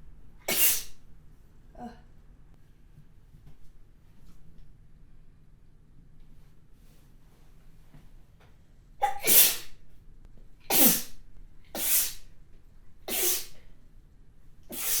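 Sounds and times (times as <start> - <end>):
person sneezing: 0.5 - 1.0, 9.0 - 9.8, 10.7 - 11.2, 11.8 - 12.3, 13.1 - 13.6, 14.7 - 15.0.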